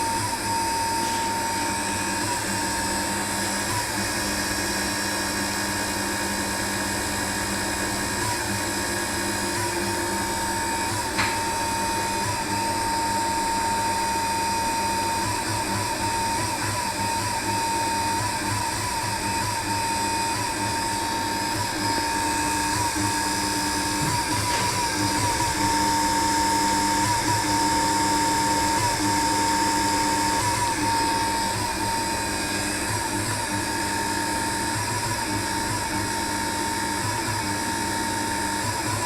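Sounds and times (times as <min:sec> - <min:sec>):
electric stirrer motor whine: 0:00.0 - 0:39.0.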